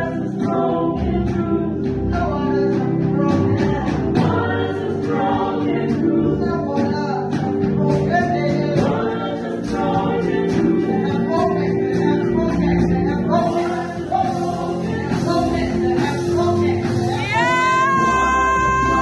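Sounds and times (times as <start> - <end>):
band playing: 0.0 - 19.0
voices singing gospel: 0.0 - 19.0.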